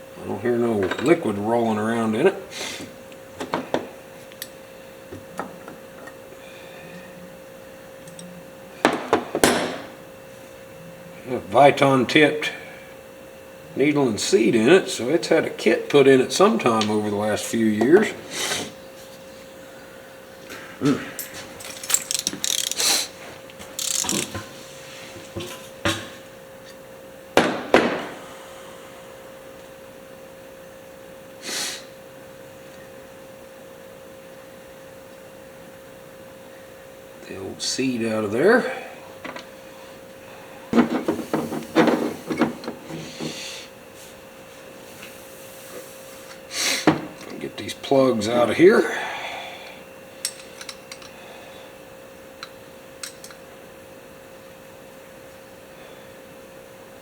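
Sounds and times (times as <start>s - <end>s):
faint steady hum: 0.0s - 57.0s
small metal parts clicking: 21.2s - 23.1s, 23.7s - 24.4s.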